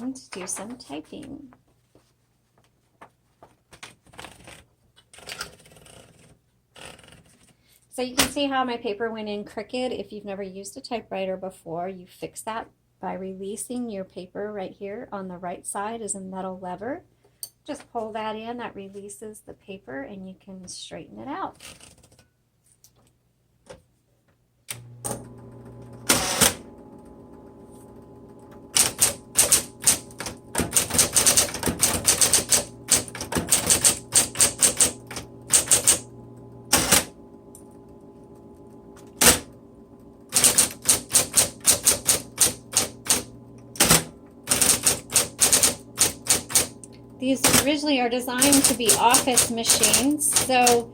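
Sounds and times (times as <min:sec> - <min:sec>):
typewriter motor humming: 0:25.0 - 0:50.9
typewriter keys striking paper: 0:28.8 - 0:36.0, 0:40.4 - 0:46.7, 0:48.4 - 0:50.9.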